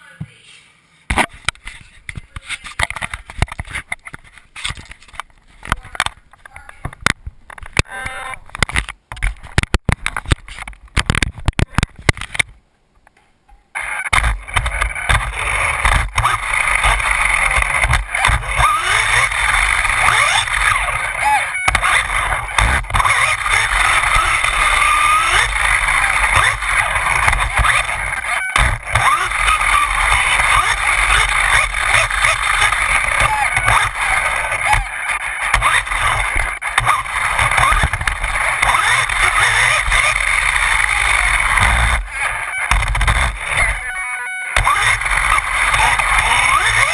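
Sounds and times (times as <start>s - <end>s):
rc car electric motor whine: 14.6s - 43.8s, 44.6s - 46.9s
sharp clattering knocks: 21.7s - 43.4s.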